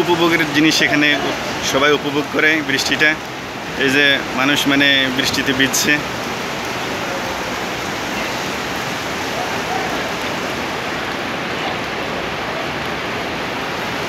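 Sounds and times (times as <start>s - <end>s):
rain falling: 0.0s - 14.0s
faint voices: 6.7s - 13.1s.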